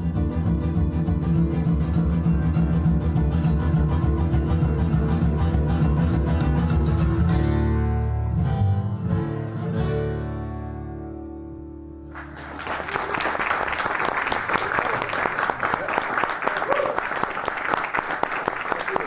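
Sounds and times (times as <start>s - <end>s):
acoustic guitar strumming chords: 0.0s - 12.1s.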